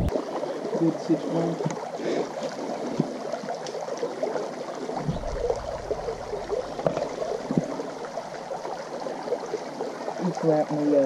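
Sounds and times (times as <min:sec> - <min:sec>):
creek water gurgling: 0:00.0 - 0:11.0
small crackling splashes: 0:00.1 - 0:11.0
low rumble: 0:05.0 - 0:09.0.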